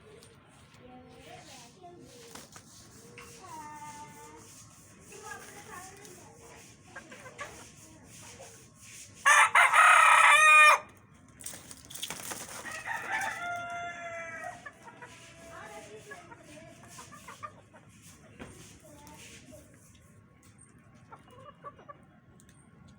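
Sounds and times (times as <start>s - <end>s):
chickens clucking: 5.4s - 10.1s, 12.4s - 18.4s, 20.4s - 22.8s
rooster crowing: 9.3s - 10.9s, 12.6s - 14.6s.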